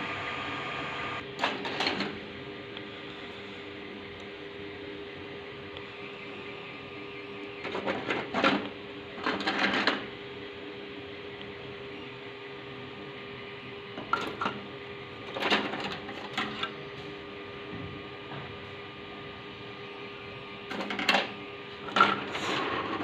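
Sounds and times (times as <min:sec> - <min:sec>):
print head buzzing: 0:00.0 - 0:01.2
fans and stepper motors humming: 0:00.0 - 0:23.0.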